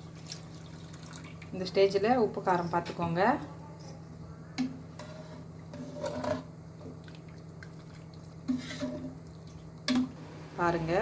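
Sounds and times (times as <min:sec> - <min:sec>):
spoon scraping metal pot: 0:04.9 - 0:06.5, 0:08.5 - 0:09.2.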